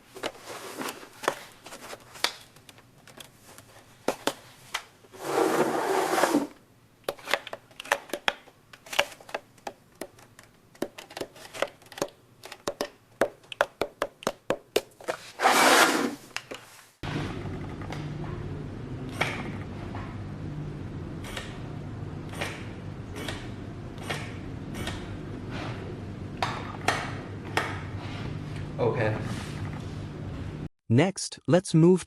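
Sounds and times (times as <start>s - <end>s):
short scraping rush: 15.4s - 16.2s.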